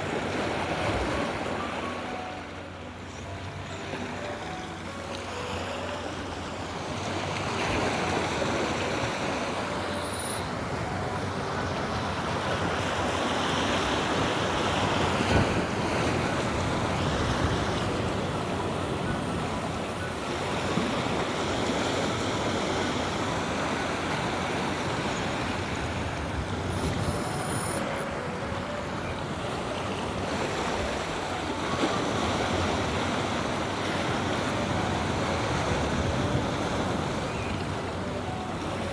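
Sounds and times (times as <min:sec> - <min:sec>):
wind on microphone: 0:25.5 - 0:28.0.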